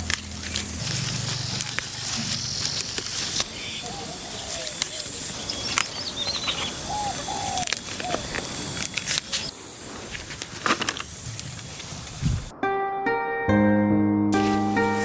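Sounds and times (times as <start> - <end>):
birds chirping: 0.0 - 10.1
steady hiss: 0.0 - 12.5, 14.4 - 15.0.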